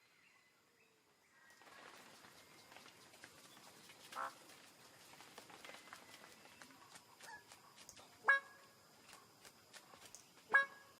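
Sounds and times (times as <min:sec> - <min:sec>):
bird calls: 0:01.3 - 0:08.6.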